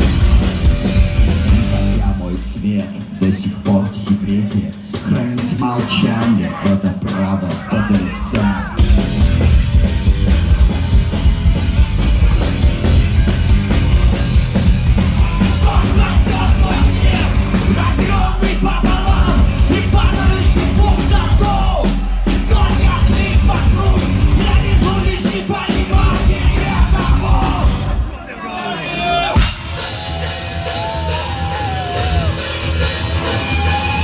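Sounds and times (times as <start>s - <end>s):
live rock band playing: 0.0s - 3.7s, 7.5s - 28.1s, 29.4s - 34.0s
person singing and shouting: 5.1s - 9.0s, 15.3s - 32.5s.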